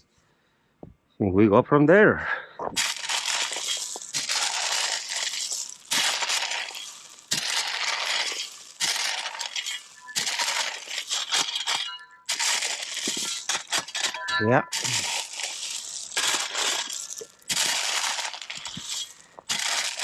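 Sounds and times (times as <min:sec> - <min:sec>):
rattling pour of stones: 0:02.8 - 0:20.0
shovel scooping gravel: 0:02.8 - 0:20.0.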